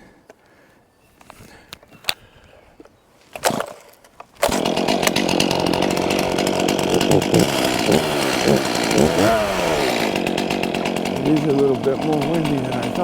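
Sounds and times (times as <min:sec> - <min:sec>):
chainsaw running: 0:03.4 - 0:13.0.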